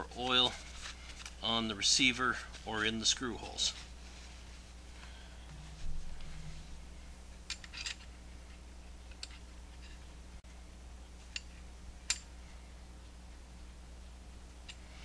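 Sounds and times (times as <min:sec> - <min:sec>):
faint low hum: 0:00.0 - 0:15.0
small metal parts clinking: 0:07.5 - 0:08.1.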